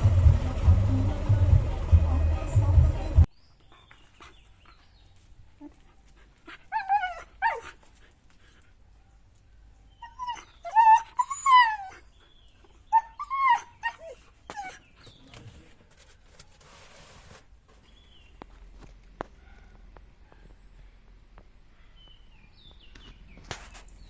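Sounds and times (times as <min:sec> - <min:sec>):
dog whining: 0:06.5 - 0:07.9, 0:09.9 - 0:15.1.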